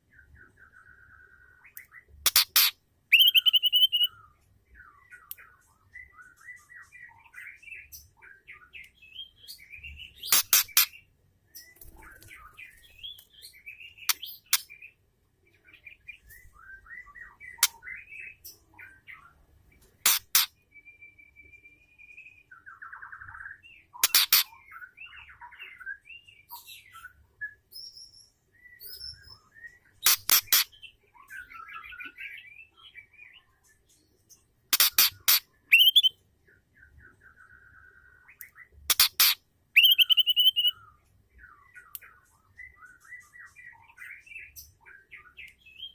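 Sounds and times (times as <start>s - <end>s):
bird chirping and warbling: 0.0s - 15.0s, 20.0s - 20.7s, 22.2s - 34.0s, 34.7s - 45.9s
bird whistle: 2.6s - 4.2s, 34.9s - 36.2s, 39.2s - 40.9s.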